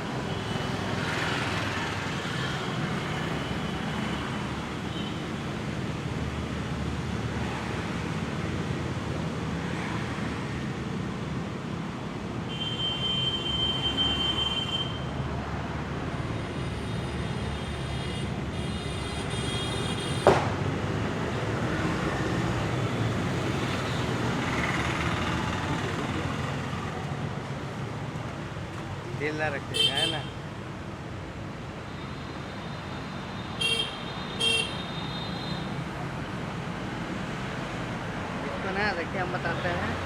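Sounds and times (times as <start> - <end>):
street traffic: 0.0 - 40.0
sharp smack: 20.2 - 20.6.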